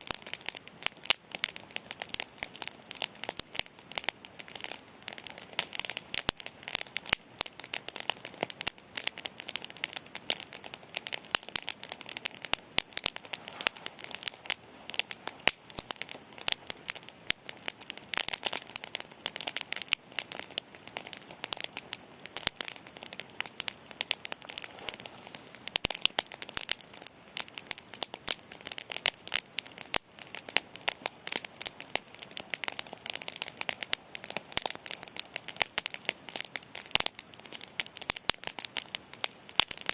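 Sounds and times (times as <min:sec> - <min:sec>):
campfire crackling: 0:00.0 - 0:39.9.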